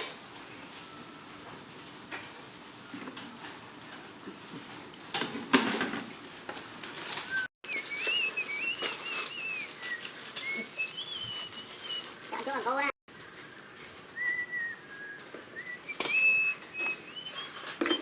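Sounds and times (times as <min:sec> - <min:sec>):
high wavering whistle: 0:07.3 - 0:12.2, 0:13.4 - 0:18.0.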